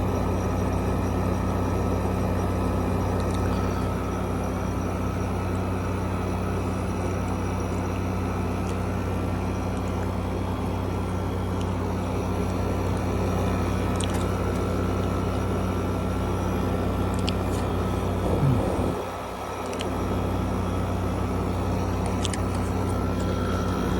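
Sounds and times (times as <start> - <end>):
air conditioner humming: 11.7 - 23.9.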